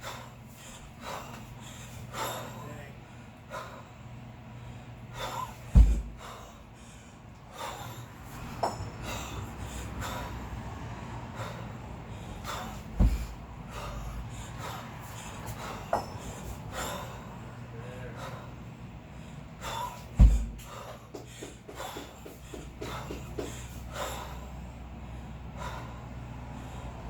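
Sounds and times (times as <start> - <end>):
person breathing hard: 0.0 - 27.0
steady low hum: 0.0 - 27.0
kettlebells thumping: 5.2 - 6.6, 7.6 - 9.4, 12.4 - 17.2, 19.7 - 24.4.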